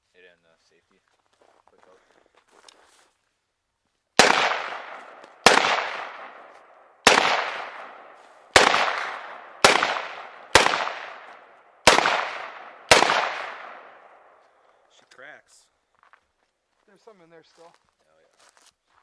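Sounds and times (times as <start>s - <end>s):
rifle shots with echo: 4.2s - 14.4s.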